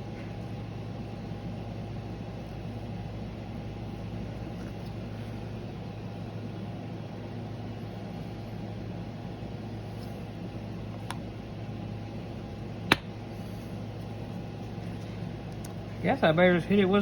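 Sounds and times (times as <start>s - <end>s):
background hum and hiss: 0.0s - 17.0s.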